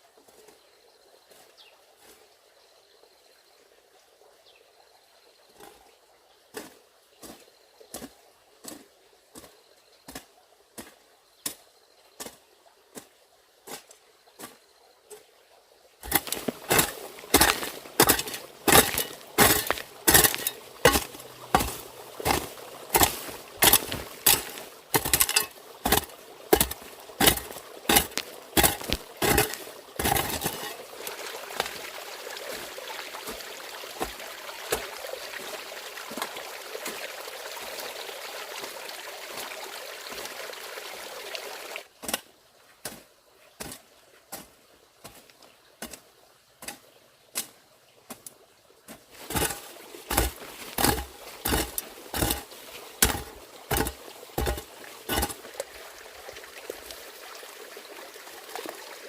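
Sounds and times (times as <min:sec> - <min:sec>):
running water rushing: 0:12.2 - 0:43.0, 0:43.6 - 0:59.0.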